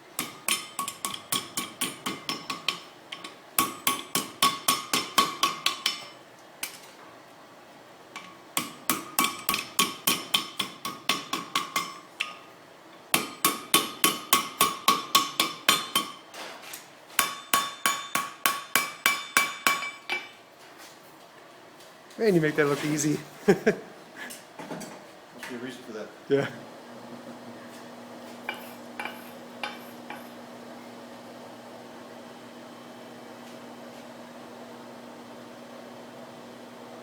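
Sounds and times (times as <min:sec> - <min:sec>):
hammer ringing on anvil: 0:17.2 - 0:20.3.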